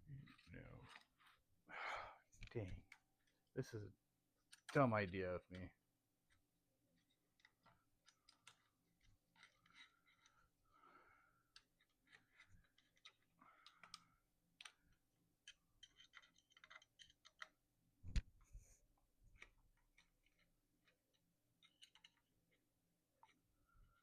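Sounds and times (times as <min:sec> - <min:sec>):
bike parts and tools clicking: 0:15.4 - 0:17.6.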